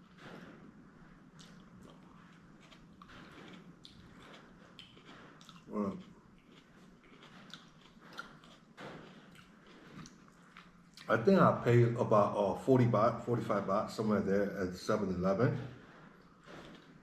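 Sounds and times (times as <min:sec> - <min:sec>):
wet mouth chewing clicks: 0:01.4 - 0:11.1.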